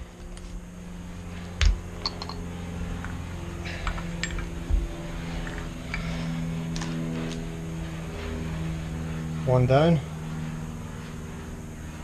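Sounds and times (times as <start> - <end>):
steady low hum: 0.0 - 12.0
metal clinks and knocks: 1.6 - 3.1, 3.8 - 4.6.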